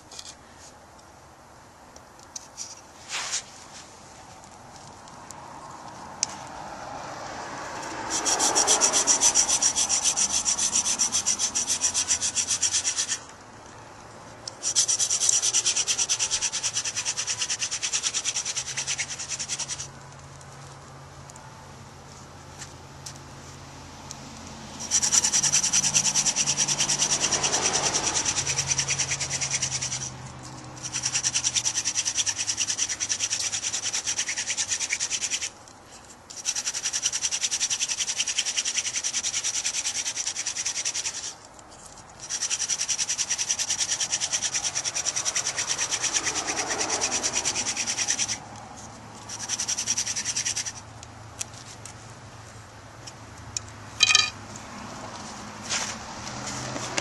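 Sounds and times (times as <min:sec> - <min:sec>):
wooden spindle rubbing: 0:00.0 - 0:00.8, 0:07.7 - 0:21.4, 0:24.8 - 0:52.0, 0:54.0 - 0:54.4.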